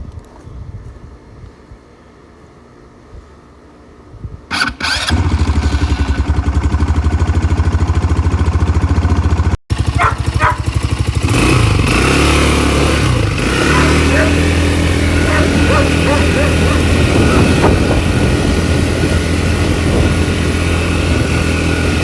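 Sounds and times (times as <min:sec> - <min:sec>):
atv engine running: 0:04.8 - 0:22.0.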